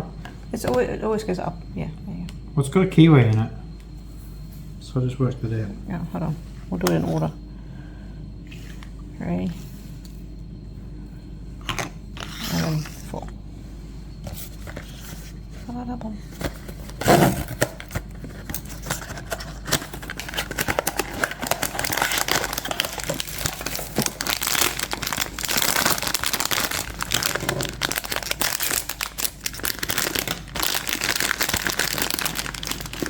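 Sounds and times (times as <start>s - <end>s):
plastic packaging crackling: 17.0s - 33.0s.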